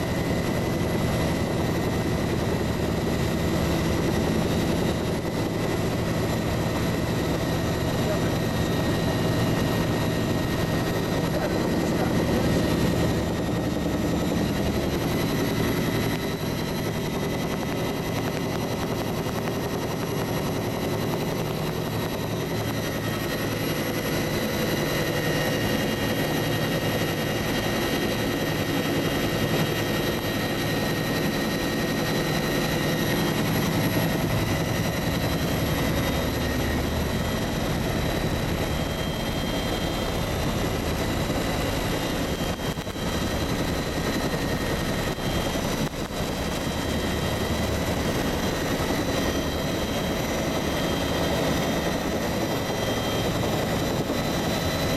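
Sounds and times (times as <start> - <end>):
helicopter engine whine: 0.0 - 54.9
helicopter rotor rumble: 0.0 - 54.9.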